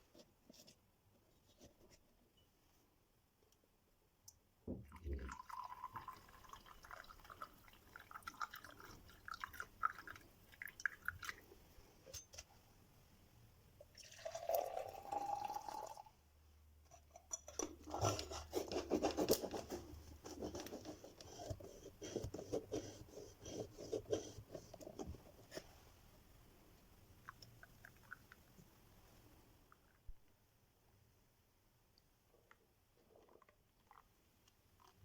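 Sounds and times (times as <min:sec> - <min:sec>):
liquid poured into cup: 0:04.8 - 0:11.5, 0:13.9 - 0:16.1
close clicking and rubbing: 0:17.3 - 0:25.8.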